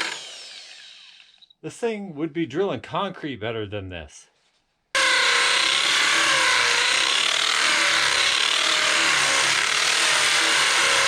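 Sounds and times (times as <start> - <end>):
power drill boring into dirt: 0.0 - 1.4, 5.0 - 11.0.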